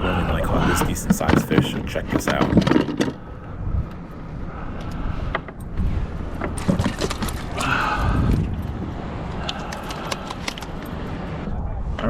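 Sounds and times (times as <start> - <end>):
wind rumbling on microphone: 0.0 - 12.0
gear clicks and knocks: 0.6 - 4.0, 6.3 - 7.9, 9.4 - 11.0.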